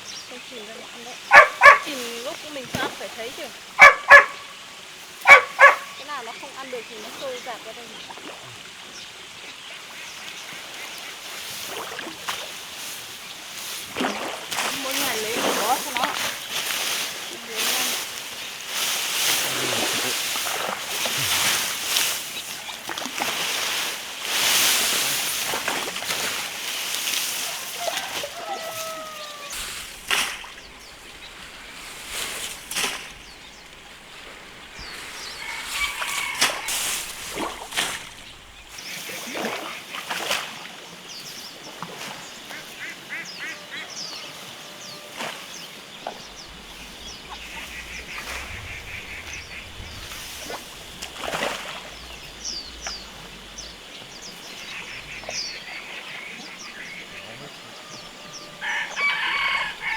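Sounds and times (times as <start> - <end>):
ducks calling: 0.0 - 7.9, 13.6 - 40.0, 42.4 - 59.9
rushing noise: 46.2 - 55.6.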